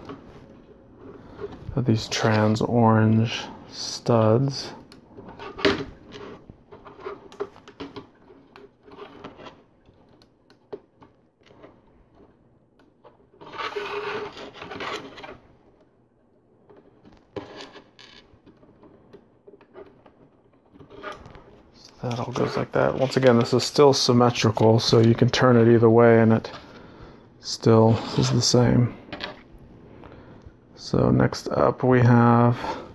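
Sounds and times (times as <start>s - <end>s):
plastic scraping and rubbing: 4.2s - 15.9s, 16.6s - 26.8s.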